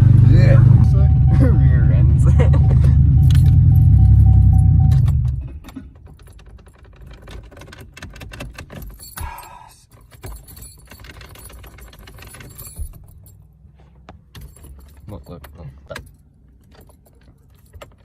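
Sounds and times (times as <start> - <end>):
car engine rumbling: 0.0 - 7.9, 8.5 - 18.0
small rattles inside car: 2.3 - 18.0
keys jangling and clicking: 5.6 - 13.6, 14.2 - 18.0.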